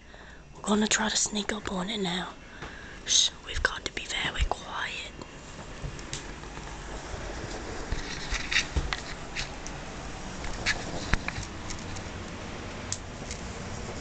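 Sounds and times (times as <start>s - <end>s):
low background hum: 0.0s - 14.0s
soft clicks and rustles: 5.5s - 14.0s.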